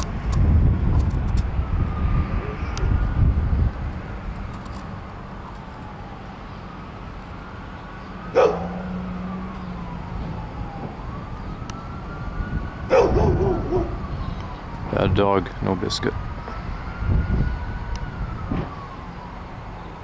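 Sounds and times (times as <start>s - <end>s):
distant siren wailing: 0.0s - 20.0s
dog barking: 8.4s - 8.9s, 12.9s - 14.0s.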